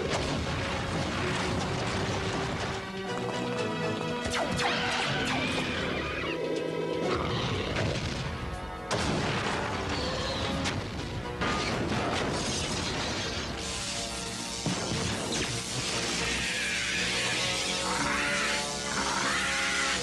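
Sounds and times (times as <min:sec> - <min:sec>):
crashing and smashing effects: 0:00.0 - 0:02.9, 0:08.9 - 0:18.9
background music: 0:00.0 - 0:20.0.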